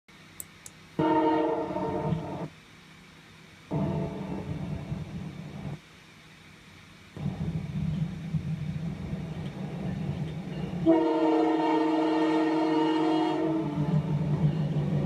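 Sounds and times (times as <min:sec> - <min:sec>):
train horn blast: 0:01.0 - 0:02.5, 0:03.7 - 0:04.9, 0:10.8 - 0:14.3
train rumbling: 0:01.0 - 0:02.5, 0:03.6 - 0:05.8, 0:07.1 - 0:15.0.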